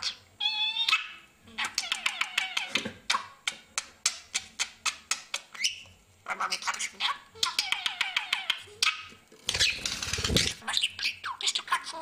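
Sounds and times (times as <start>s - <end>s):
budgerigar clicks and chirps: 1.7s - 5.9s.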